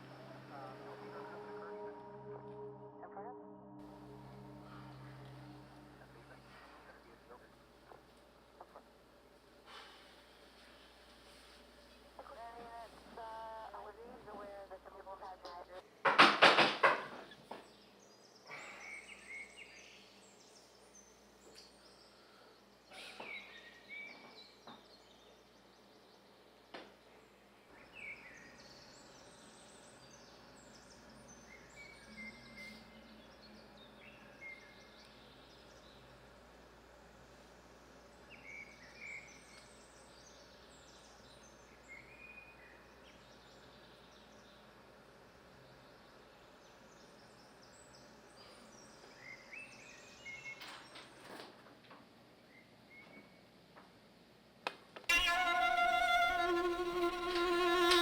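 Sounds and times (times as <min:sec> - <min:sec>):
low steady hum: 0:00.0 - 0:15.9, 0:55.1 - 0:58.0
faint bird chirps: 0:18.4 - 0:25.5, 0:27.7 - 0:36.1.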